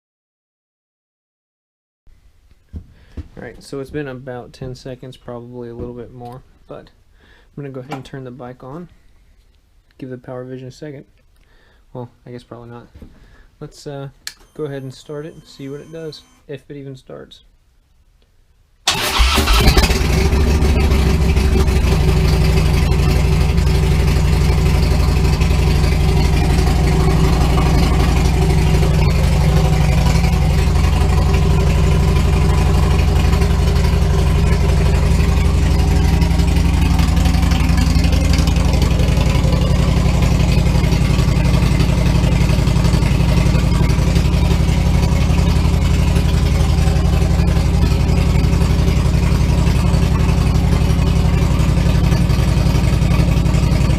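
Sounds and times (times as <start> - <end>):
motorcycle engine starting and idling: 14.4 - 16.4, 18.9 - 53.9.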